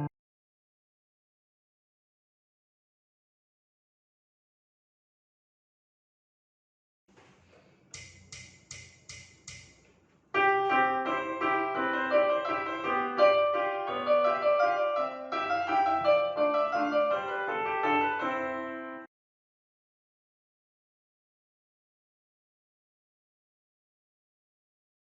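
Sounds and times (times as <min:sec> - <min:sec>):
quick ticks: 0:07.9 - 0:09.9
piano music: 0:10.4 - 0:19.1.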